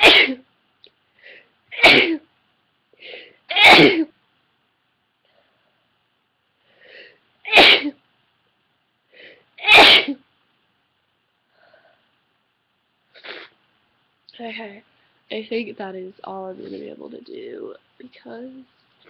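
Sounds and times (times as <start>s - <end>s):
woman sneezing: 0.0s - 0.4s, 1.7s - 2.2s, 3.5s - 4.1s, 7.5s - 8.0s, 9.6s - 10.2s.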